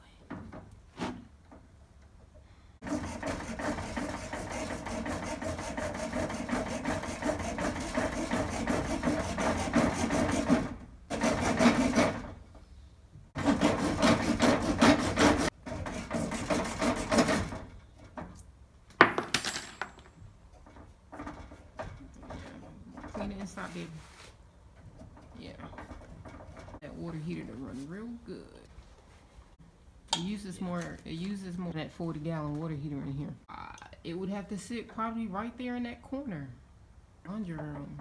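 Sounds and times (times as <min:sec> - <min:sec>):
pipe being sanded by hand: 0:02.8 - 0:12.3, 0:13.4 - 0:17.6, 0:22.3 - 0:25.2.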